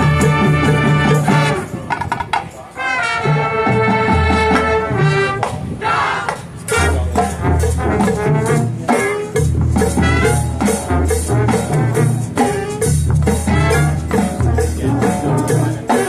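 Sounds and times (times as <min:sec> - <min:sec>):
brass sustained chords: 0:00.0 - 0:01.7, 0:02.8 - 0:05.4.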